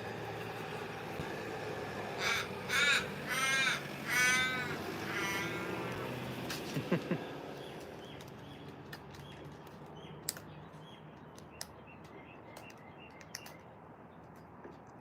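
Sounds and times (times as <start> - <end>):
sharp clicks: 8.2 - 10.6, 11.2 - 13.7.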